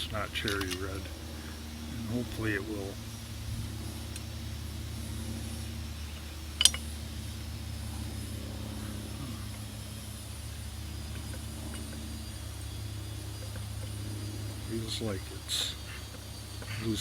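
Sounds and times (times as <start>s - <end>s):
low machine hum: 0.0s - 17.0s
sharp click: 6.6s - 6.9s.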